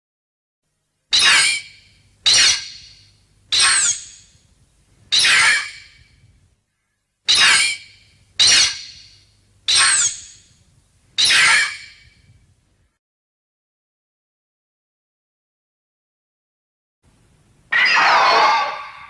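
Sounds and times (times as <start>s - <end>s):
shrill creature screech: 17.7s - 19.0s.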